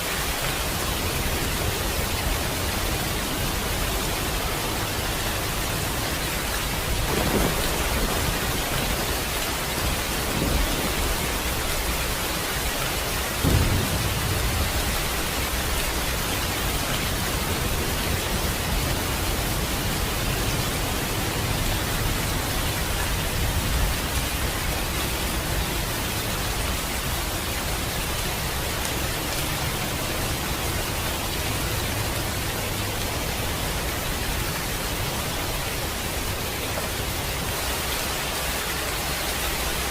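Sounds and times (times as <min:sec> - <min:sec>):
steady rain hiss: 0:00.0 - 0:39.9
low rolls of thunder: 0:06.8 - 0:24.2.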